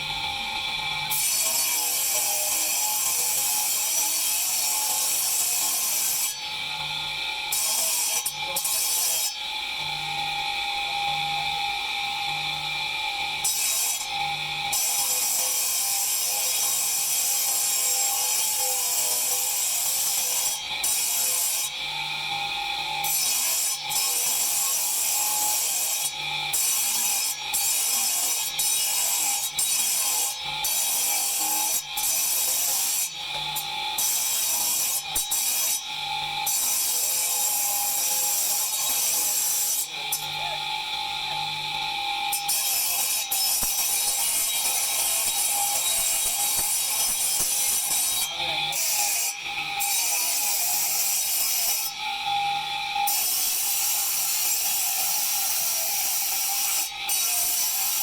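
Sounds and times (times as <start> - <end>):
tool grinding marble: 0.0 - 10.4, 11.1 - 58.0
abrasive tool scraping marble: 23.1 - 26.0, 26.6 - 40.7, 42.4 - 51.9.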